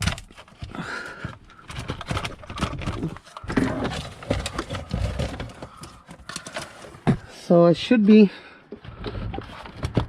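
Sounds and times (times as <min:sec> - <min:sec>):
wiring rustling: 0:00.0 - 0:07.3.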